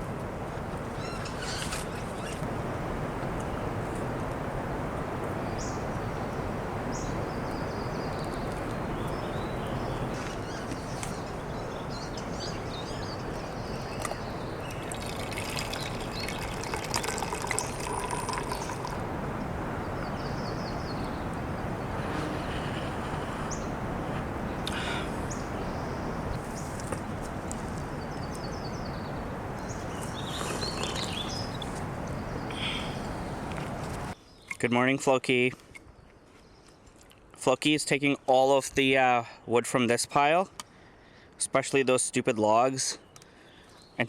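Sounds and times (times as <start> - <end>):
flowing water rushing: 14.0 - 22.1.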